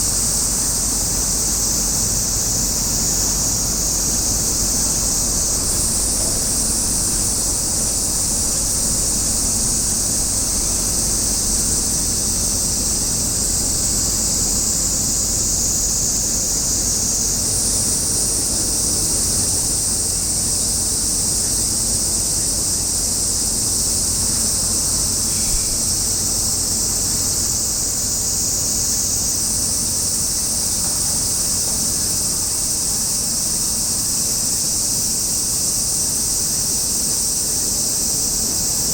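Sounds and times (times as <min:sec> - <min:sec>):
high-pitched hiss: 0:00.0 - 0:38.9
low steady rumble: 0:00.1 - 0:28.8.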